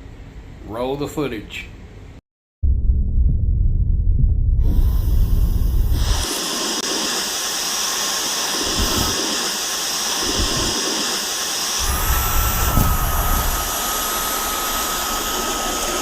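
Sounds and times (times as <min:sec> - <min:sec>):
low rumble: 0:02.6 - 0:06.2
cordless vacuum running: 0:05.6 - 0:16.0.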